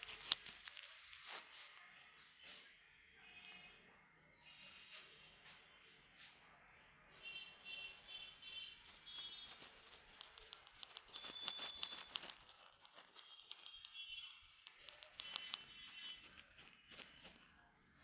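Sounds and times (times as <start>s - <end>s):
hands scratching through hair: 0.0s - 2.3s, 8.9s - 17.5s.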